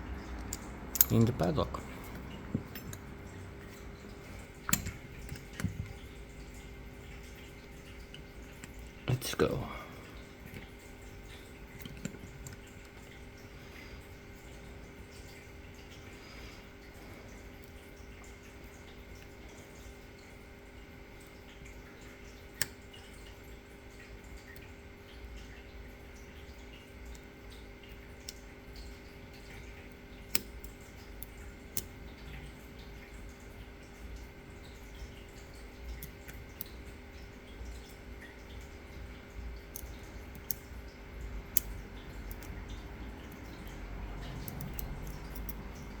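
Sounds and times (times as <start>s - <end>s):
lock picks clicking: 0.5s - 1.4s.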